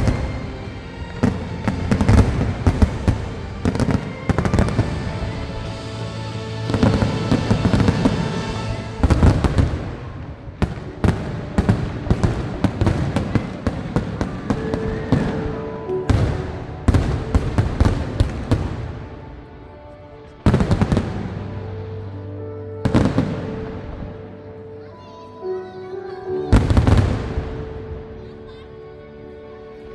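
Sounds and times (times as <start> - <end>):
fireworks bangs and crackles: 0.0 - 19.5, 20.4 - 21.6, 22.8 - 24.0, 26.5 - 27.7
background music: 0.0 - 29.9.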